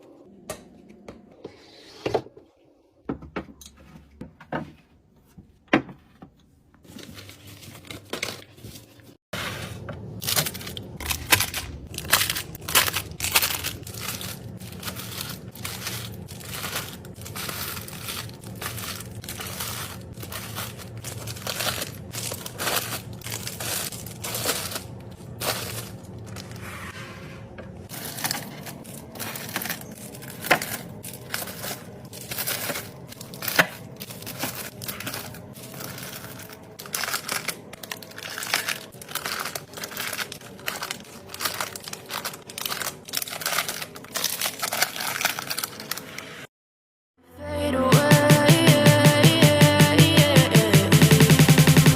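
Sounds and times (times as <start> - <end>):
plastic packaging crinkling: 10.0 - 26.7, 27.9 - 46.5.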